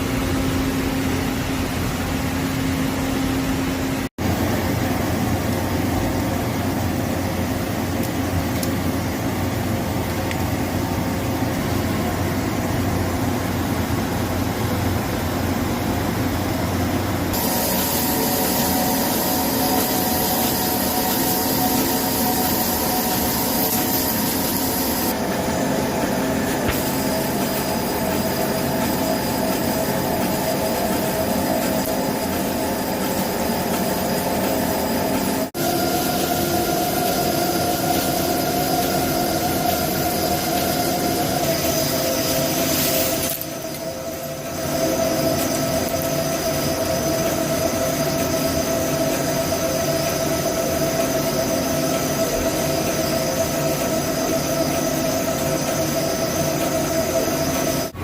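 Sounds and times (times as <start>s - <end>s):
lathe squealing whine: 17.3s - 58.0s
machining hiss: 17.3s - 58.0s.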